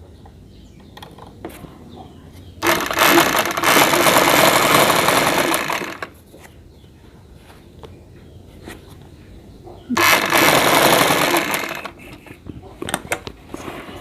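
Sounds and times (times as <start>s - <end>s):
sewing machine running: 2.6s - 6.1s, 10.0s - 12.0s.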